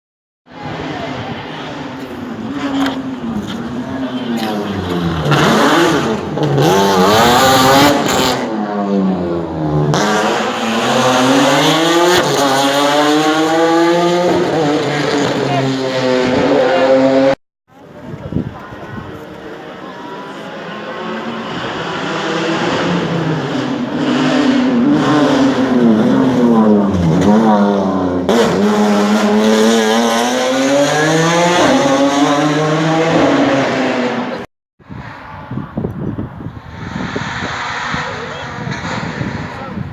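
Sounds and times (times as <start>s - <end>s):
race car engine at full throttle: 0.5s - 39.9s.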